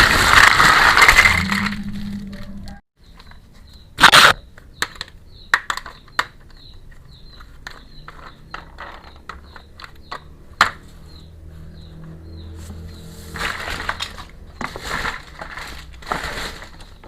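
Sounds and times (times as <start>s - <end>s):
plastic packaging rustling: 0.0s - 2.8s, 13.3s - 17.0s.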